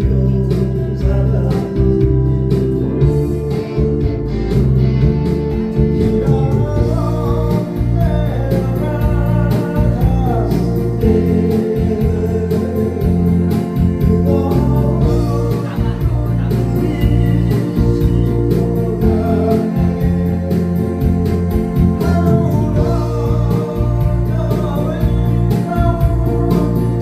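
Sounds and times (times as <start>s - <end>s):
person singing with band: 5.7s - 27.0s.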